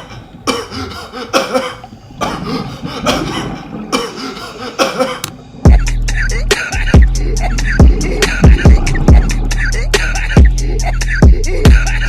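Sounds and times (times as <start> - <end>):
person coughing: 0.4 - 5.9.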